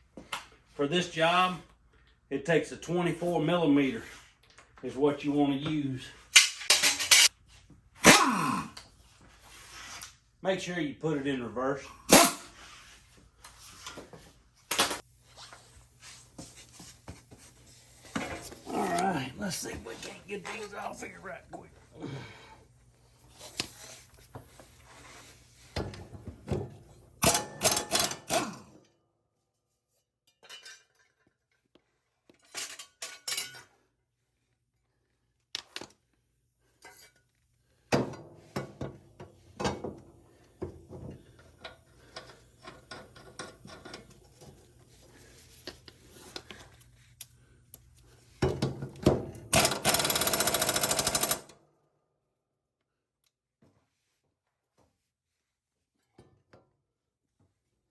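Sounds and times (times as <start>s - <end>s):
impact wrench hammering: 49.6s - 51.4s.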